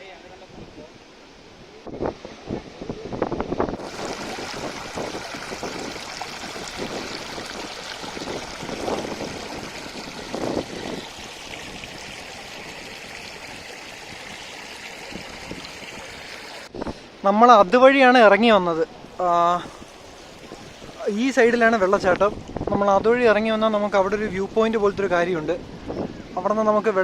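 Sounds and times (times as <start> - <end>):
waterfall rushing: 3.8 - 16.7.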